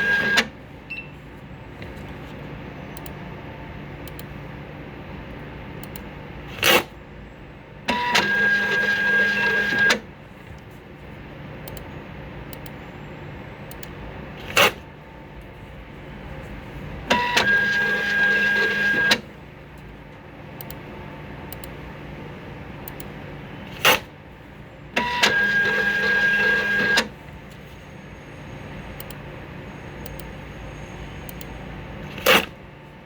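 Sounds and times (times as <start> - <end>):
label printer motor whirring: 7.9 - 10.1, 17.0 - 19.4, 24.9 - 32.8.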